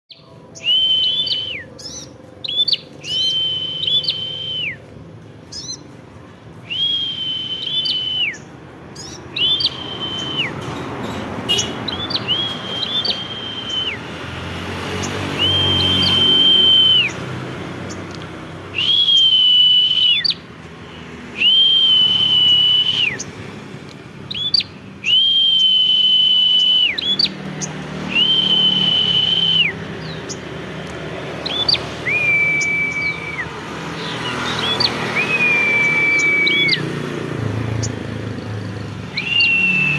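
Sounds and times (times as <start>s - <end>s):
bird chirps: 0.1s - 5.9s, 6.6s - 14.0s, 18.8s - 23.4s, 24.3s - 30.6s, 31.4s - 36.9s, 39.1s - 39.9s
songbird long flat whistles: 0.6s - 4.9s, 6.6s - 10.6s, 11.9s - 14.1s, 15.3s - 17.2s, 18.7s - 20.4s, 21.4s - 23.3s, 24.3s - 27.3s, 28.1s - 30.2s, 31.4s - 37.0s, 39.1s - 39.9s.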